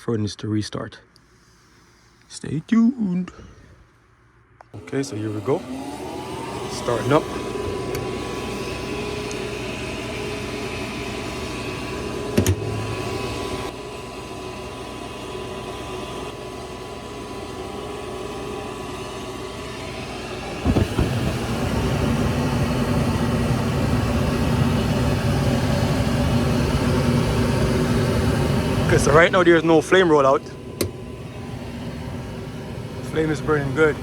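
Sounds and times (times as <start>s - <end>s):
furnace inducer motor running: 4.6s - 34.0s
low rumble of burning gas: 4.7s - 34.0s
furnace click: 6.1s - 9.7s, 12.3s - 13.7s, 20.6s - 21.7s, 30.8s - 31.0s
burners lighting with a thump: 12.3s - 12.8s, 20.4s - 23.5s.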